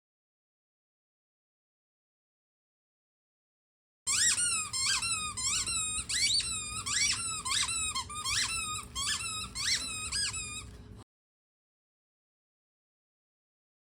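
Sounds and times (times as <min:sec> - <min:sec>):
squeaky dog toy squeaking: 0:04.1 - 0:10.9.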